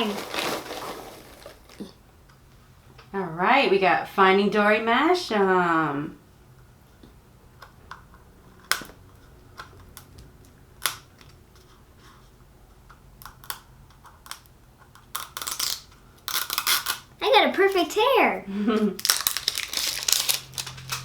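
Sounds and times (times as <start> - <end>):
plastic capsule clicking and crinkling: 13.2 - 17.1, 19.0 - 21.0.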